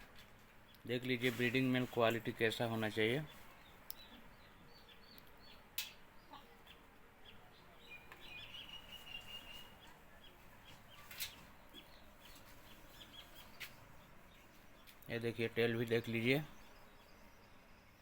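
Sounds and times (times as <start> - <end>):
chickens clucking and chirping: 1.7 - 15.0.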